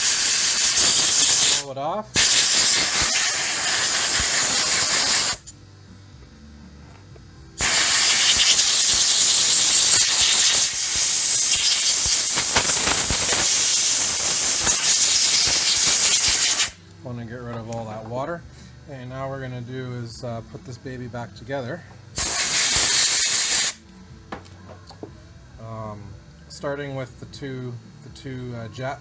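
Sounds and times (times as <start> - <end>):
compressed air blow gun hissing: 0.0 - 5.6, 7.6 - 16.8, 22.1 - 23.8.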